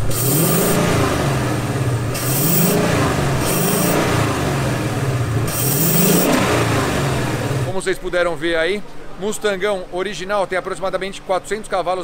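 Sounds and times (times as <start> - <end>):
car engine revving: 0.0 - 7.8.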